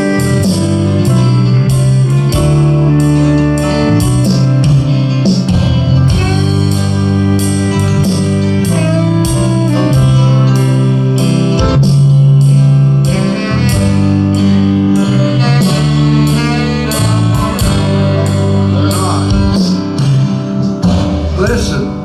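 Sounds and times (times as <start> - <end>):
bass line: 0.0 - 22.0
guitar: 0.0 - 22.0
held chords: 15.2 - 22.0
drums steady beat: 20.6 - 22.0.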